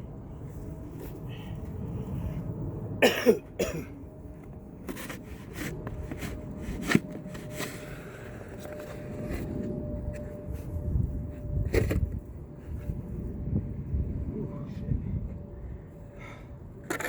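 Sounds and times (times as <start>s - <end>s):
man coughing: 3.0s - 4.0s.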